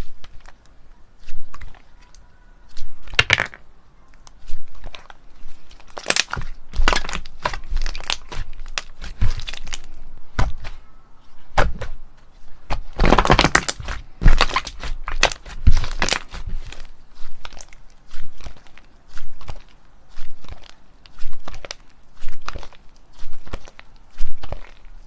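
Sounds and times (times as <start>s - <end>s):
slime clicking and popping: 5.9s - 9.9s, 13.0s - 16.4s.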